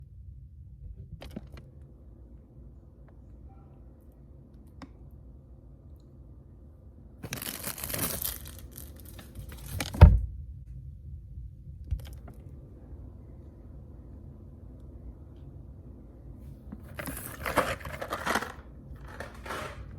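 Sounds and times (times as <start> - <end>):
plastic wrapper crinkling and tearing: 7.2 - 9.8, 16.8 - 19.8.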